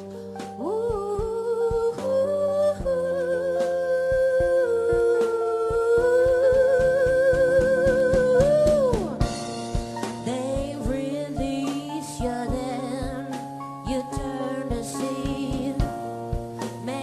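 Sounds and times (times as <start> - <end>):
keyboard chords: 0.0 - 17.0
steady low beat: 2.8 - 11.6, 13.9 - 17.0.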